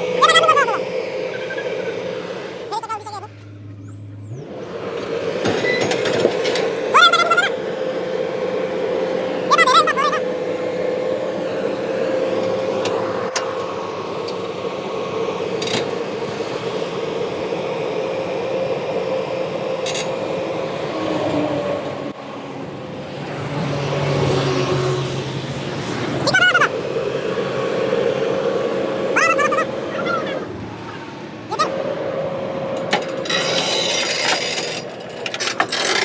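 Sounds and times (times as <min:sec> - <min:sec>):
high warbling sound: 0:00.0 - 0:03.4, 0:28.9 - 0:31.8
excavator diesel engine running: 0:00.0 - 0:36.0.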